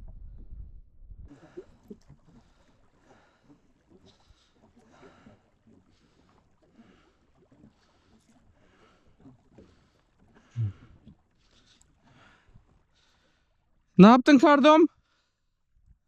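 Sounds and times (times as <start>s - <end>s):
paddle swishing in water: 1.2s - 14.0s.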